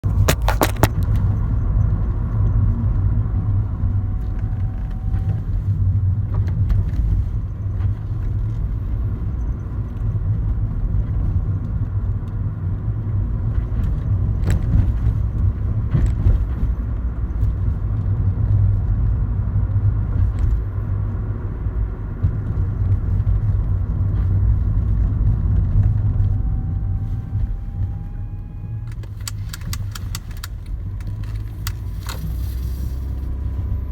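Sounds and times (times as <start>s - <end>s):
road and drivetrain rumble: 0.0s - 33.9s
faint brake hum: 25.7s - 33.9s.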